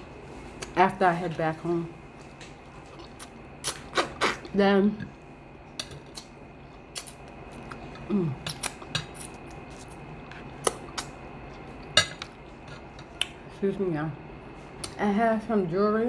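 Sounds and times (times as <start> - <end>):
chewing and lip smacking: 2.2 - 4.6, 5.8 - 13.4, 14.8 - 15.0.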